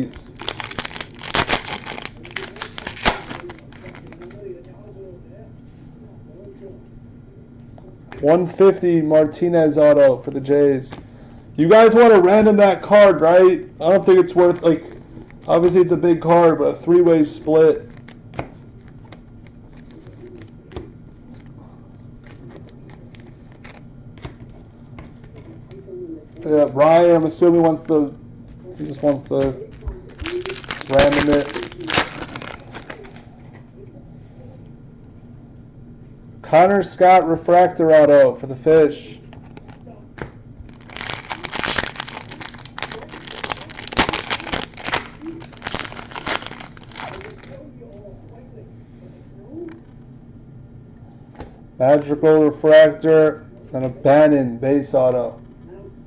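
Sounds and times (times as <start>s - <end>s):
cards clicking and rustling: 0.0s - 4.4s, 28.8s - 33.2s, 40.7s - 47.6s
low steady hum: 0.0s - 56.0s.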